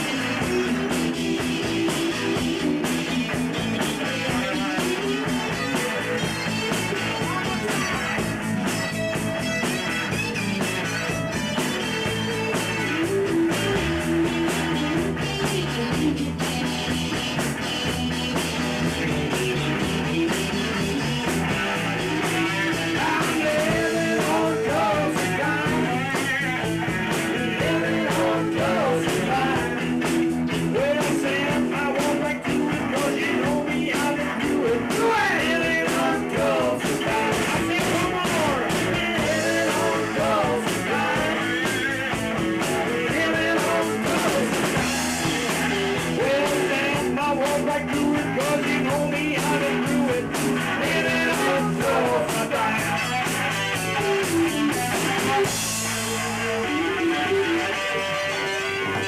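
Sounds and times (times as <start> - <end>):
guitar: 0.0 - 59.0
rock band playing: 0.0 - 59.0
person singing: 22.7 - 53.2.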